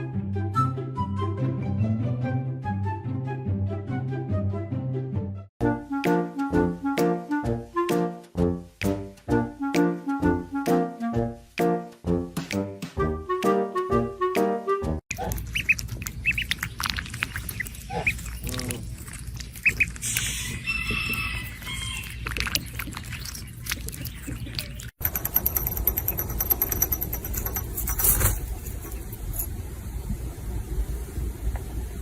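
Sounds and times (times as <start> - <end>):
high squeaky animal calls: 17.4 - 18.8, 19.6 - 22.4.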